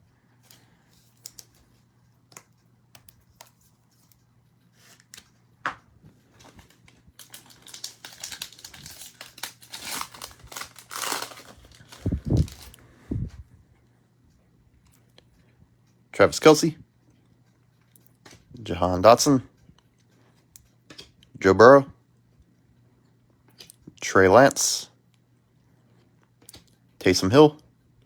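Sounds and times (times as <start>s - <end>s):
foil wrapper crinkling and tearing: 6.4s - 12.8s.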